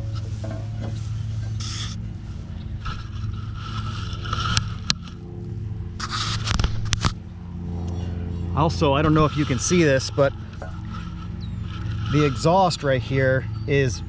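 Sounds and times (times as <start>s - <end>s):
belt scraping and rustling: 0.0s - 5.4s, 9.0s - 13.0s
steady low hum: 0.0s - 14.0s.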